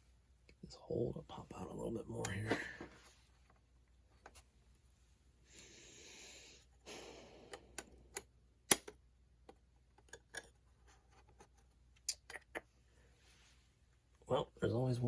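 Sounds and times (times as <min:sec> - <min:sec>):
plastic and hardware clicks: 0:07.6 - 0:10.6.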